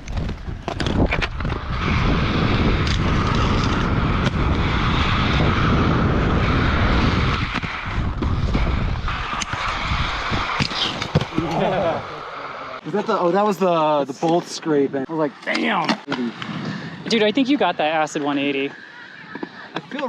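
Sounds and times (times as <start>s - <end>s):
inline skates rolling on concrete: 0.0s - 12.5s, 15.5s - 20.0s
skate scraping hiss: 3.0s - 12.5s.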